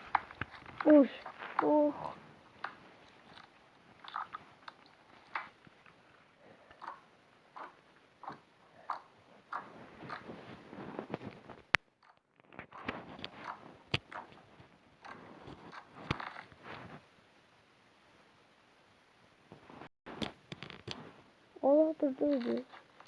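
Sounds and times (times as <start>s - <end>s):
slime squishing and crackling: 2.5s - 6.1s.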